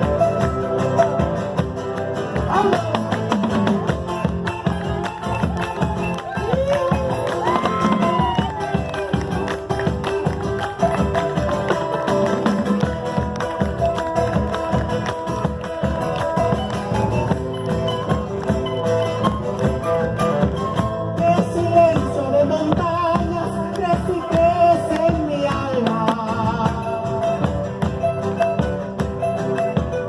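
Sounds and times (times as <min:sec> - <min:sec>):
sliding melody line: 0:00.0 - 0:22.6
steady percussion beat: 0:00.0 - 0:30.0.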